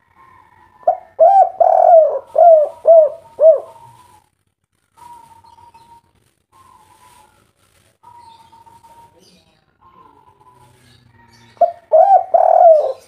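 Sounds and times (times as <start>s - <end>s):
dove cooing: 0.8s - 4.3s, 8.0s - 9.2s, 9.8s - 13.0s.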